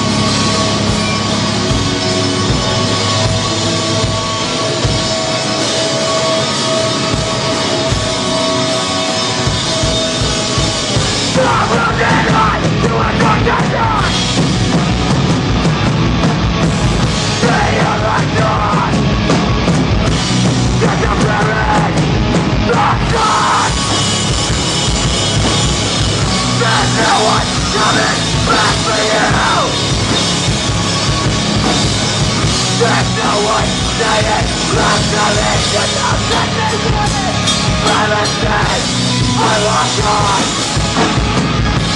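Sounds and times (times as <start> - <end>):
punk band playing live: 0.0 - 41.9
shouted vocals: 22.6 - 23.8, 26.4 - 29.8, 32.7 - 40.6.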